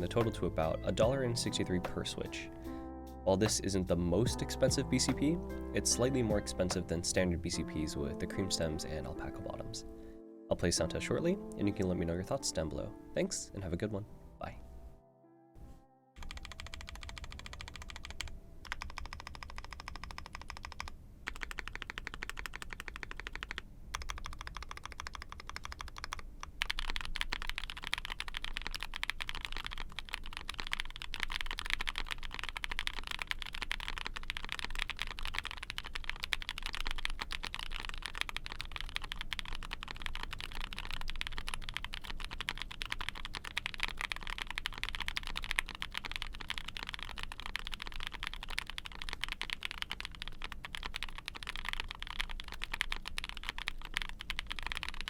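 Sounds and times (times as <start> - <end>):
mechanical keyboard typing: 16.2 - 55.0.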